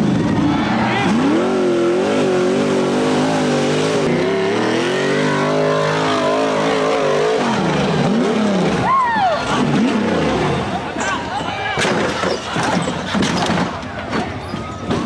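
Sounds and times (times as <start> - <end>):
engine running at high revs: 0.0 - 11.0.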